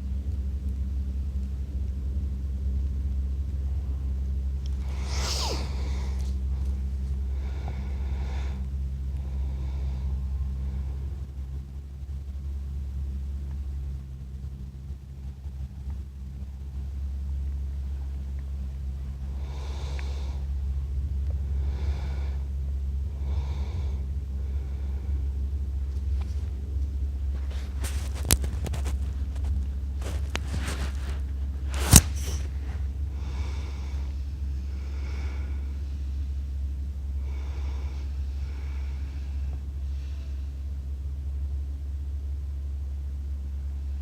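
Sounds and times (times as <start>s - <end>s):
steady low hum: 0.0s - 44.0s
person snoring: 4.8s - 6.4s.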